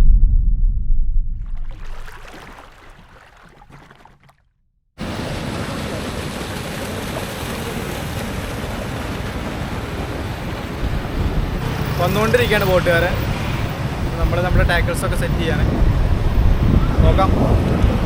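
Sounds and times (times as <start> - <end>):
wind: 0.0 - 18.0
sea surf: 5.0 - 18.0.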